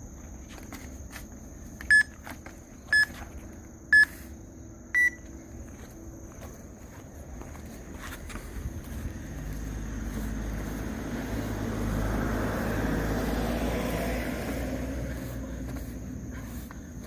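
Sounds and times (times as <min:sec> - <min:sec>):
timer countdown beeps: 0:01.9 - 0:02.1, 0:05.0 - 0:05.2.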